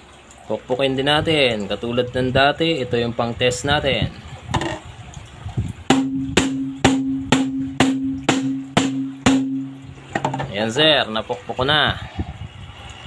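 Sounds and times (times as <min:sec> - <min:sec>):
riflescope being pounded: 0:05.9 - 0:10.5.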